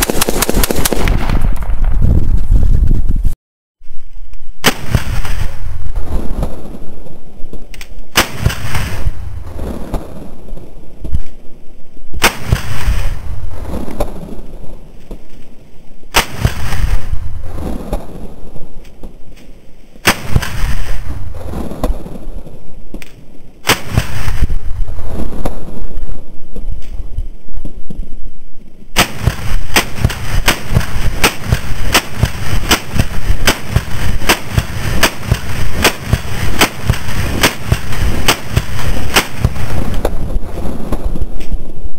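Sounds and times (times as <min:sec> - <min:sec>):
rifle shots: 0:00.0 - 0:01.9, 0:04.6 - 0:06.2, 0:08.1 - 0:10.1, 0:12.2 - 0:14.2, 0:16.1 - 0:18.1, 0:20.0 - 0:22.0, 0:23.6 - 0:24.7, 0:28.9 - 0:41.2.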